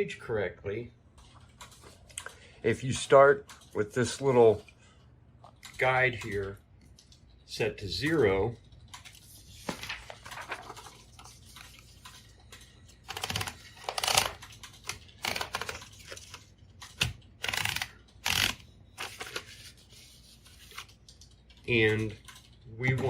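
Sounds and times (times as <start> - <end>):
typewriter clicks and rattles: 8.0 - 19.4.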